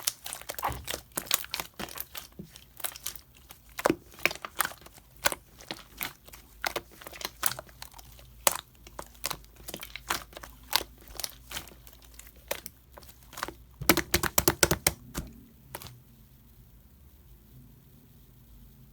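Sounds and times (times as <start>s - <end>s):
slime crackling clicks: 13.3s - 15.9s.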